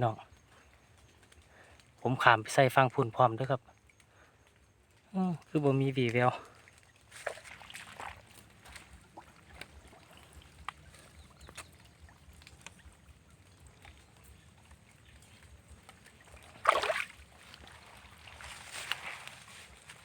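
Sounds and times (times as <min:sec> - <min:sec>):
water sloshing: 0:05.4 - 0:20.0
water splash: 0:07.1 - 0:10.9, 0:15.2 - 0:20.0.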